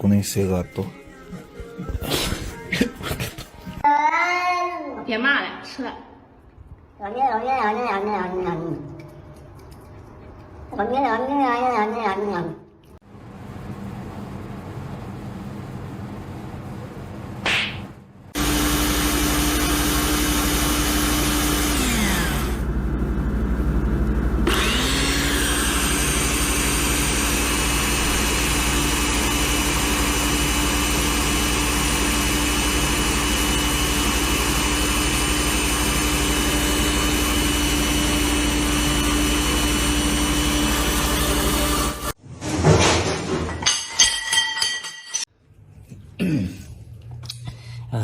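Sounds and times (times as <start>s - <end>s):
electric motor humming: 18.4s - 42.2s.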